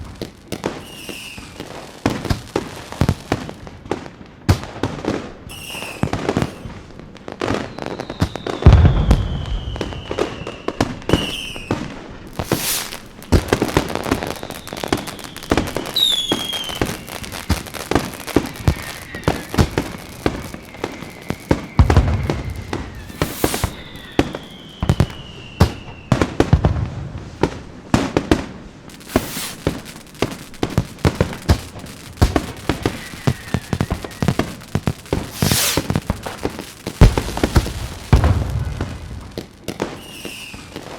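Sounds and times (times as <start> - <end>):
fireworks crackling and popping: 0.0 - 40.9
high falling whistles: 0.8 - 1.6, 5.5 - 6.7, 7.5 - 26.5, 28.9 - 39.0, 39.9 - 40.8
deep booms of bursting shells: 28.9 - 39.4.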